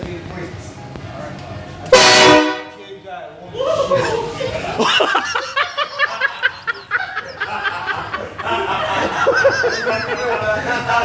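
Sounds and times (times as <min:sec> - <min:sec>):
hearty laughter: 0:03.7 - 0:11.0.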